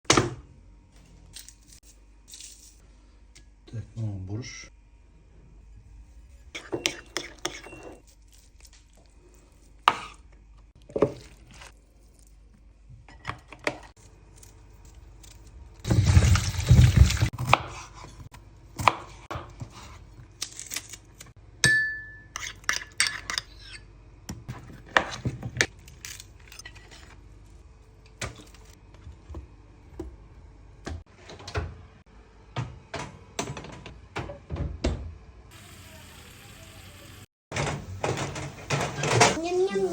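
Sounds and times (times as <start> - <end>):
dishes and cutlery clinking: 6.6 - 8.0.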